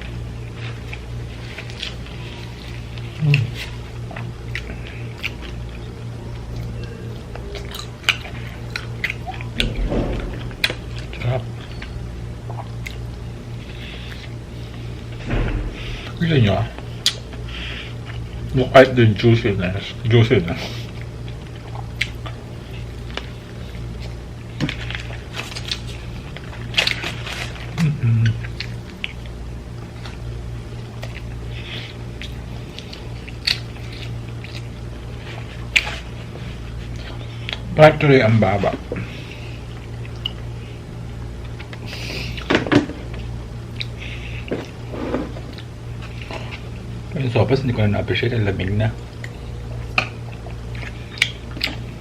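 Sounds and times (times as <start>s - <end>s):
person chewing fried chicken: 0.0s - 15.1s, 20.6s - 37.7s, 38.8s - 47.1s, 49.0s - 52.0s
steady low hum: 0.0s - 52.0s
sharp knocks: 9.6s - 10.9s.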